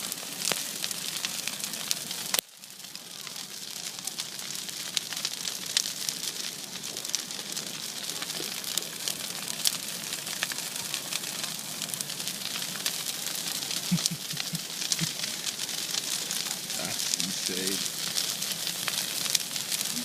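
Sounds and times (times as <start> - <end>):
bonfire crackling: 0.0 - 20.0.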